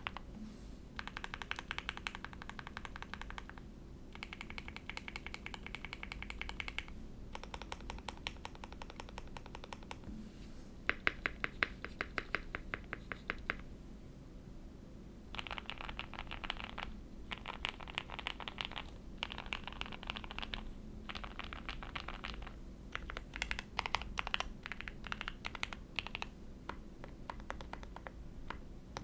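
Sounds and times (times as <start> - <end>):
mechanical keyboard typing: 0.0 - 0.2, 1.0 - 10.0, 15.3 - 29.0.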